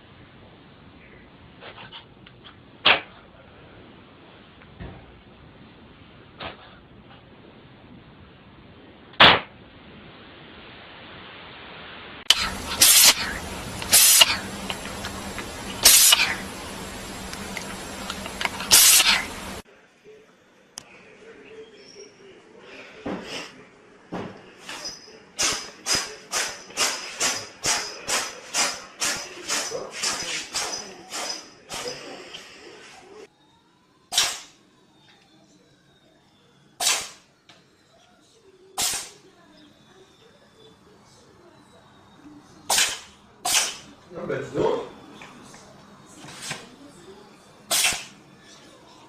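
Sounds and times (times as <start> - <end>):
cat sneezing: 12.3 - 16.5, 18.6 - 19.4, 34.1 - 34.5, 36.8 - 37.2, 38.8 - 39.2, 42.7 - 43.9, 47.7 - 48.2.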